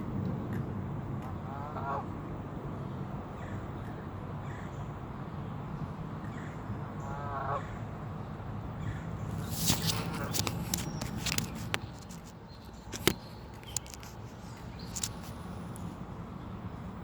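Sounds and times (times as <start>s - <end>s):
geese honking: 7.1s - 7.8s.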